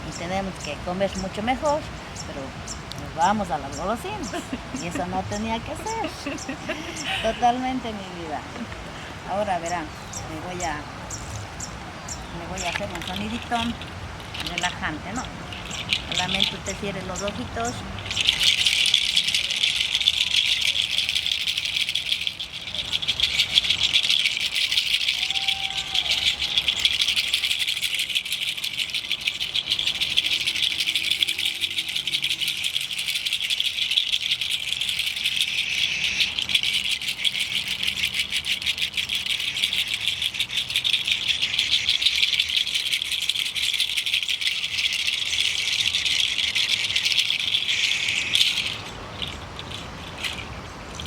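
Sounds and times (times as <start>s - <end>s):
hand rattle shaken fast: 3.7s - 7.5s, 12.5s - 51.0s.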